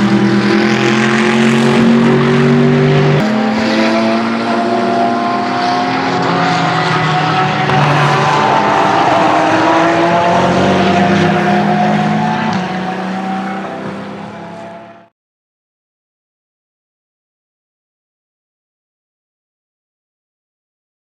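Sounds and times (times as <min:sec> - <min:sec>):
race car engine at high revs: 0:00.0 - 0:15.1.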